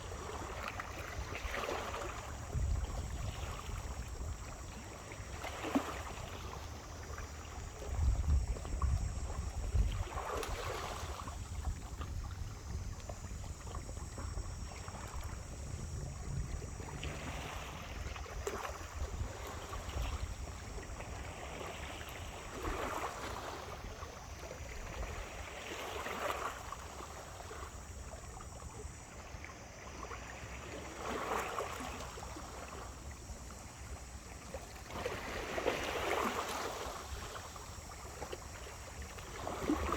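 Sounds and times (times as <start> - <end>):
steady background hiss: 0.0 - 39.9.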